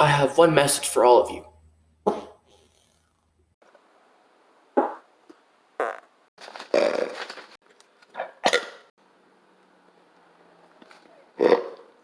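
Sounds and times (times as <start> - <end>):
fart sounds: 4.8 - 5.1, 5.8 - 7.5, 11.4 - 12.0.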